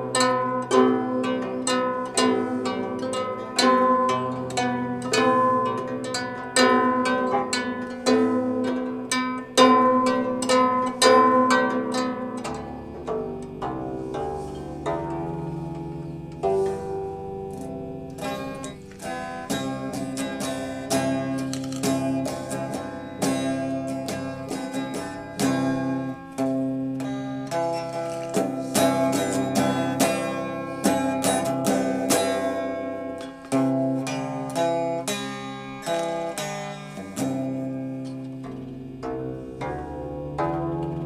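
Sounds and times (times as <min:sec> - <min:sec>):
plucked string melody: 0:00.0 - 0:41.0.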